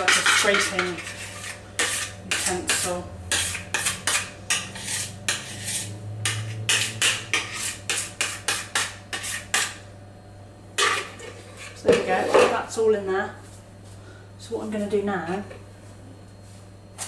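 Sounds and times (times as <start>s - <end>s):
utensil scraping a mixing bowl: 0.0s - 9.8s, 10.8s - 12.6s.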